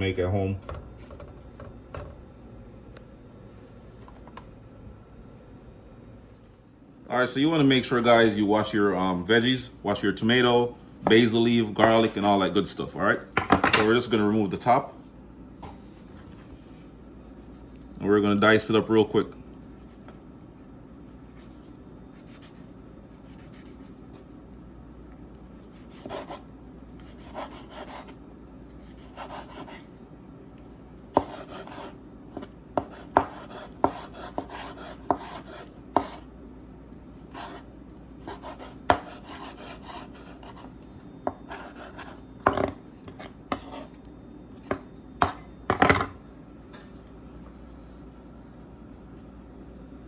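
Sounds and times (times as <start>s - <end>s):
knife slicing tomato: 31.1s - 36.3s.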